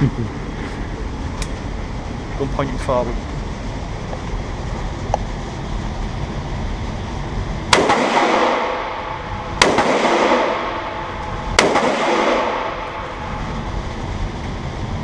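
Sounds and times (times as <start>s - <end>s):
rifle shots echoing: 7.7s - 13.1s.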